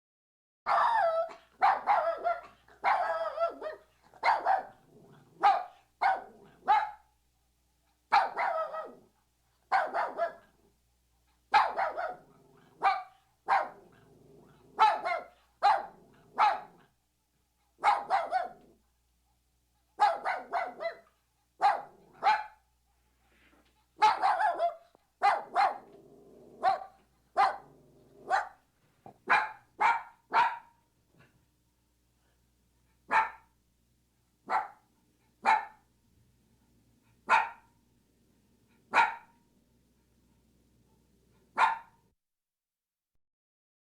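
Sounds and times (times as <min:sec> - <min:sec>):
puppy barking: 0:00.7 - 0:07.1, 0:08.1 - 0:09.1, 0:09.7 - 0:10.5, 0:11.5 - 0:14.0, 0:14.8 - 0:16.9, 0:17.8 - 0:18.7, 0:20.0 - 0:22.6, 0:24.0 - 0:26.0, 0:26.6 - 0:31.3, 0:33.1 - 0:33.5, 0:34.5 - 0:35.8, 0:37.3 - 0:37.7, 0:38.9 - 0:39.4, 0:41.5 - 0:42.0.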